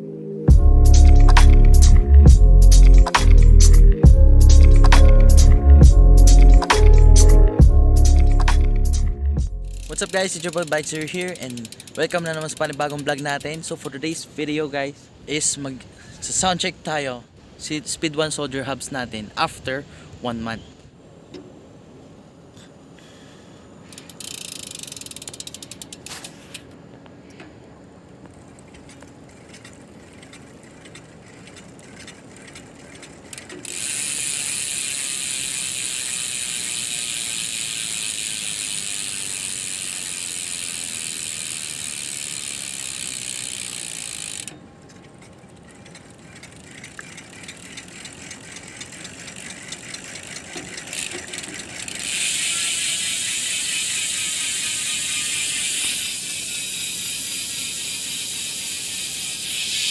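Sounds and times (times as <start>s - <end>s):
bicycle hub ratcheting buzz: 0.5s - 13.9s, 23.8s - 26.7s, 28.3s - 59.9s.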